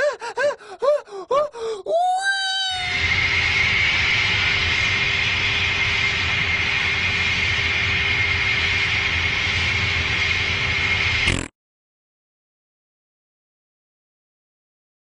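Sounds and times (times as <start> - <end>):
constant high whine: 2.4 - 11.5.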